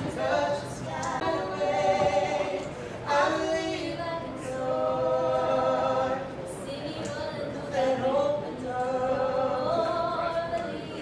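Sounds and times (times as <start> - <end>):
choir singing: 0.0 - 6.3.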